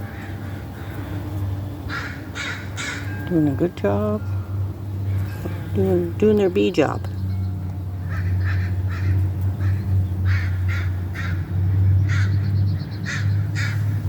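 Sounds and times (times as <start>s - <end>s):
crows cawing: 0.0s - 1.2s, 1.9s - 3.3s, 8.0s - 14.0s
steady low hum: 0.0s - 14.0s.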